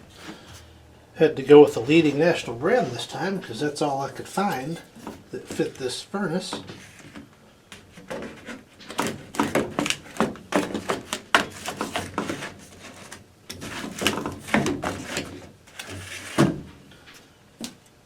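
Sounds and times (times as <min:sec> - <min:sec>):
cardboard filter rustling and knocking: 0:06.5 - 0:16.8.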